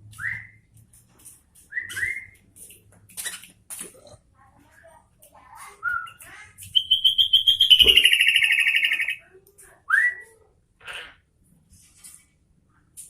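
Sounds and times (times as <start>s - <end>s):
bird singing whistles and trills: 1.7s - 2.4s, 5.8s - 9.2s.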